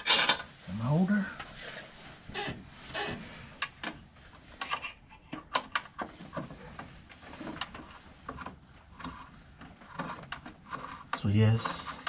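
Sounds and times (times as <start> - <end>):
metal parts and tools clinking: 0.0 - 0.5.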